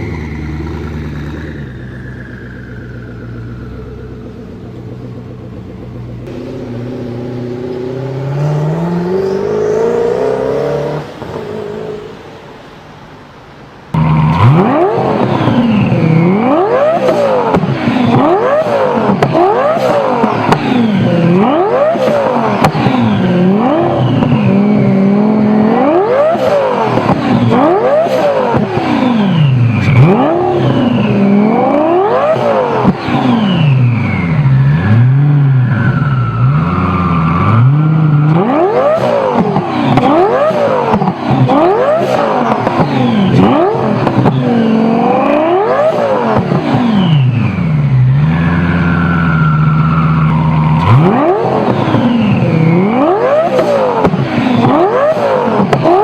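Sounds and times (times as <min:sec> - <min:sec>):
car engine revving: 0:00.0 - 0:12.7, 0:13.9 - 0:56.0
turbo whistle sliding down: 0:08.2 - 0:12.1.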